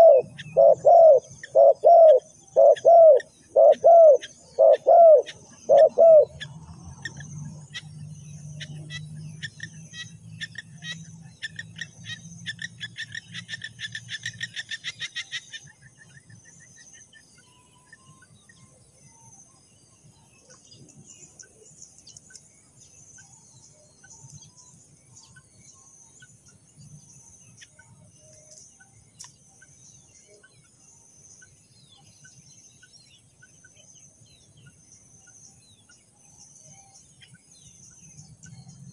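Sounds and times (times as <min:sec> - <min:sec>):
dove cooing: 0:00.0 - 0:07.3.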